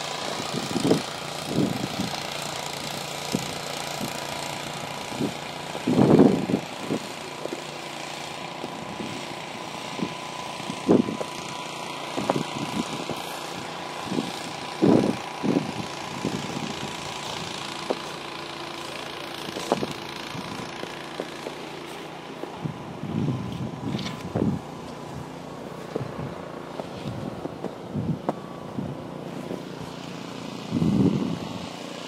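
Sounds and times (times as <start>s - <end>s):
steady motor drone: 0.0s - 32.0s
short thumps and scuffs: 25.8s - 28.4s.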